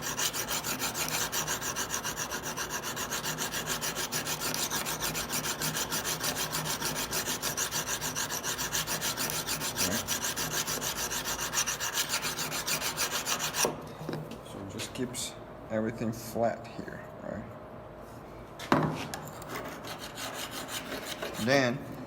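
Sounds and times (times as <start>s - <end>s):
knife sharpener rubbing on blade: 0.0s - 13.7s.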